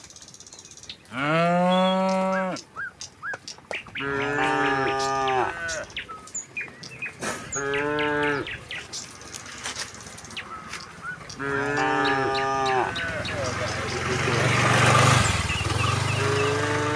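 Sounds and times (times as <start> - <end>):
cattle mooing: 1.1 - 2.6, 3.9 - 6.1, 7.2 - 8.9, 10.4 - 16.9.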